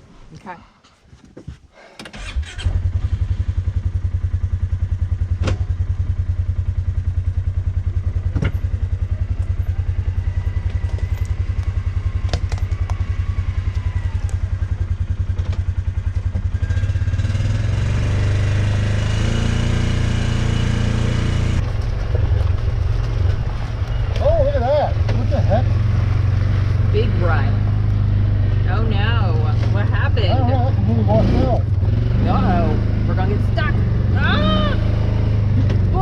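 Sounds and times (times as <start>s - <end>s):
utility vehicle engine running: 2.2s - 36.0s.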